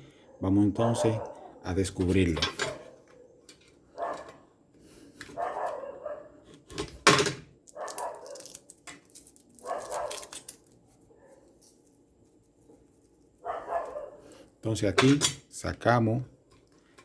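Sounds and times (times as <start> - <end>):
dog barking: 0.2 - 1.6, 2.7 - 3.4, 4.0 - 4.4, 5.3 - 6.4, 7.7 - 8.5, 9.6 - 10.3, 13.4 - 14.3.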